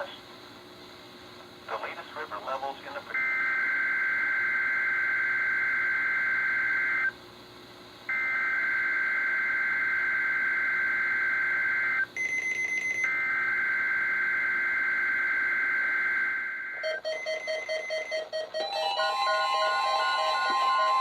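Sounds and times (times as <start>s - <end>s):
digital two-tone data warble: 16.2s - 21.0s.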